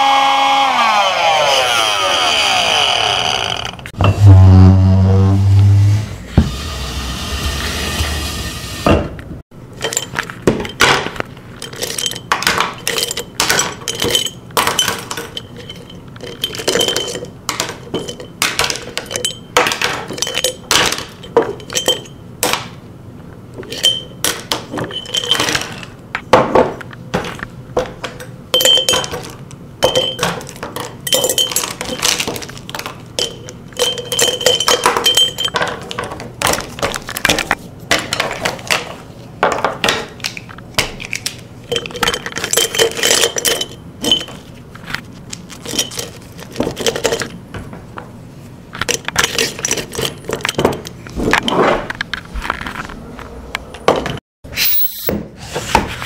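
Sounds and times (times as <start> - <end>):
hard objects clinking together: 9.7 - 22.8, 23.6 - 26.3, 28.0 - 47.4, 48.8 - 51.6.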